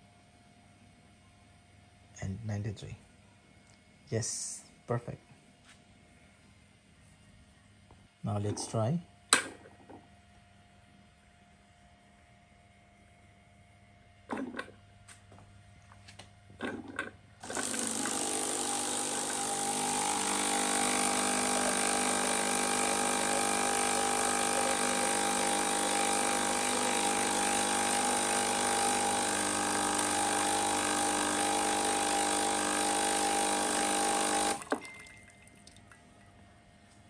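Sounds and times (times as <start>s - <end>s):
espresso machine running: 16.6s - 34.8s.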